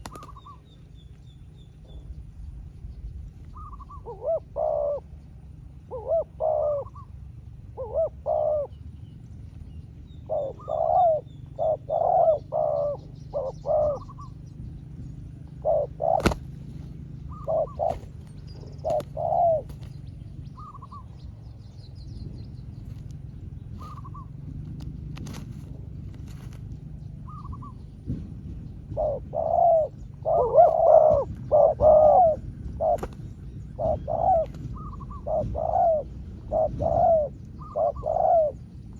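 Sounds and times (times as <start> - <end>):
doves cooing: 0.0 - 0.9, 3.4 - 21.4, 22.7 - 38.9
faint small bird chirps: 0.0 - 4.2, 16.2 - 24.4.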